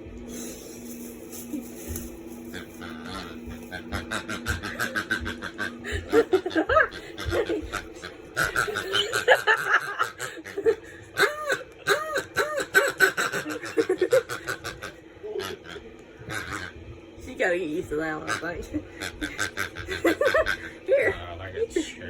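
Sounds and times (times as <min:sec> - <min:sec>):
pig toy grunting oinks: 0:02.5 - 0:05.7, 0:07.2 - 0:09.4.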